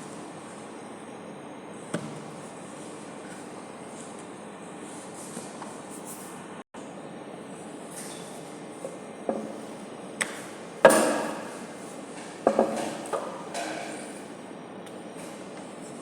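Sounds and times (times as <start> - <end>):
utensils knocking on cookware: 12.2 - 14.2.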